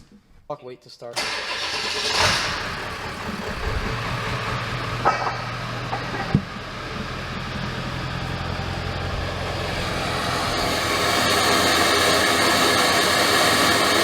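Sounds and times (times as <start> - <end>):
diesel engine running: 1.2 - 14.0
rising turbo whistle: 8.0 - 14.0.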